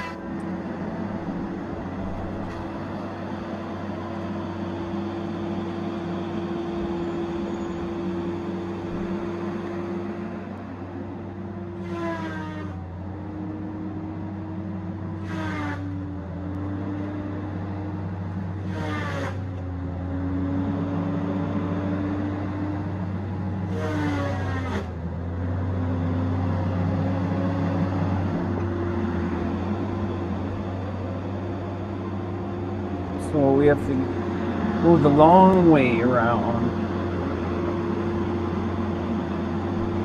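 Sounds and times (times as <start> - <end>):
diesel engine running under load: 0.0 - 40.0.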